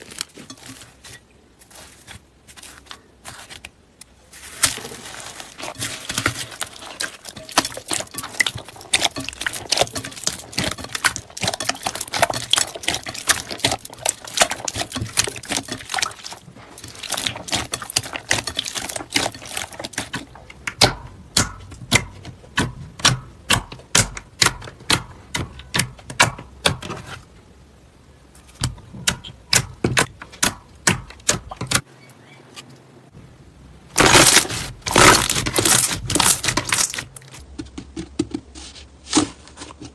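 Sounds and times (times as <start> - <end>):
slime crackling and popping: 34.0 - 37.2.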